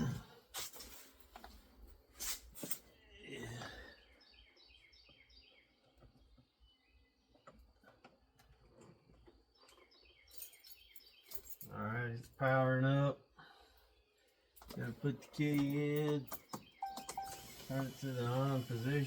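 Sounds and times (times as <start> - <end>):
bird chirping: 3.9 - 7.8, 9.2 - 11.7, 13.9 - 19.0.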